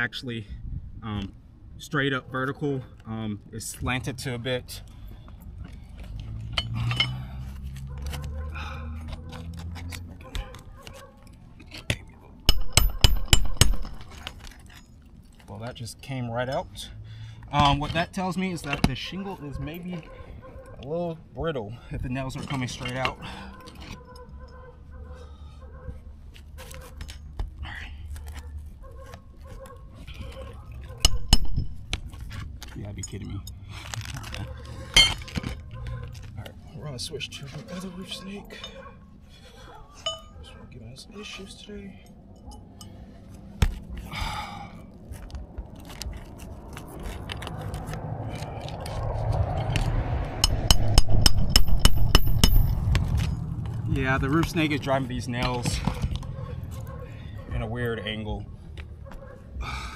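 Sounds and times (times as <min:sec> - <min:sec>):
clicks and scraping on shingles: 0:04.9 - 0:15.9, 0:26.3 - 0:36.8, 0:45.0 - 0:53.8
ringing metallic clacks: 0:06.6 - 0:07.2, 0:12.5 - 0:14.9, 0:31.0 - 0:31.9, 0:50.4 - 0:53.5
metal tool clicks: 0:12.5 - 0:14.3, 0:31.0 - 0:32.0
metal tool scraping: 0:12.5 - 0:15.0, 0:30.9 - 0:32.0, 0:49.6 - 0:53.5
low rumble: 0:45.0 - 0:54.8
sharp knock: 0:50.4 - 0:53.1.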